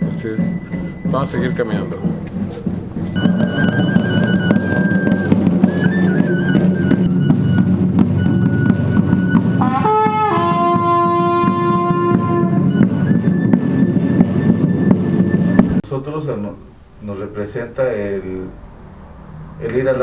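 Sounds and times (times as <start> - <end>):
drum beating fast: 0.0 - 15.8
trumpets holding long notes: 3.2 - 15.5.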